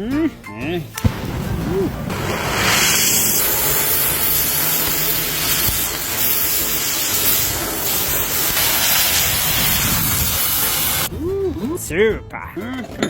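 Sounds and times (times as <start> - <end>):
loud hissing rush of noise: 1.4 - 11.1.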